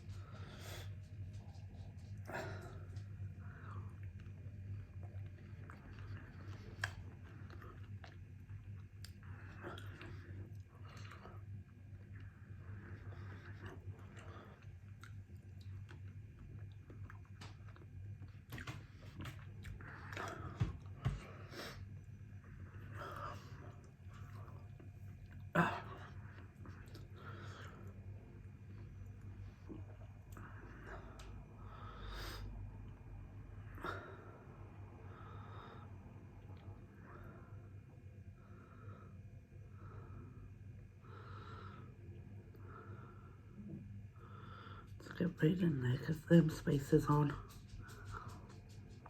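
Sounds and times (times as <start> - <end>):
person chewing food: 0.0 - 31.4
low steady hum: 0.0 - 49.0.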